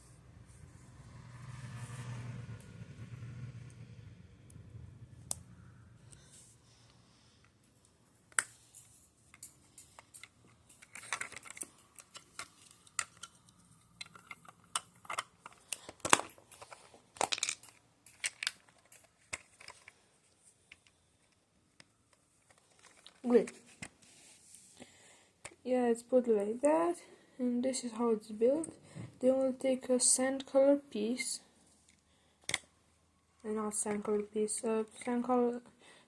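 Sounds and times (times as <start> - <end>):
plastic pieces clicking: 8.3 - 20.0, 20.6 - 23.9.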